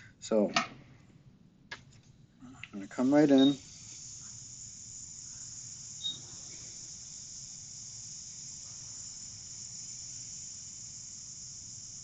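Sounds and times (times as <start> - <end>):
hot air blower hissing: 3.0 - 12.0.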